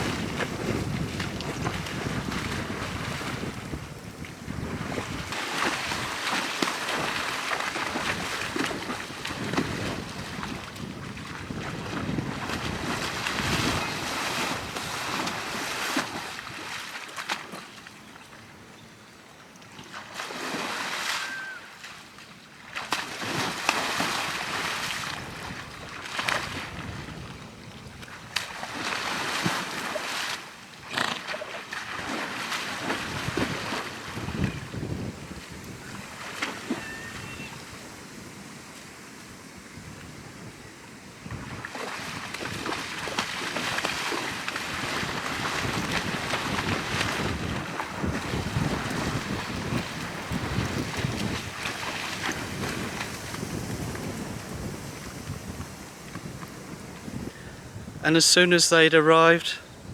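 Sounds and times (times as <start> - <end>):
wind buffeting microphone: 0.0 - 16.6, 24.4 - 29.5, 32.8 - 58.0, 59.6 - 59.9.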